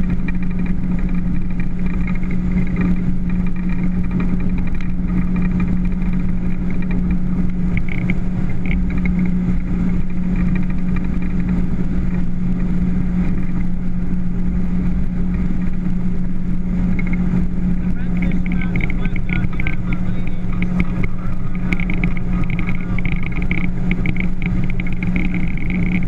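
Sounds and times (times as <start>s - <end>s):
motorboat engine running: 0.0s - 26.0s.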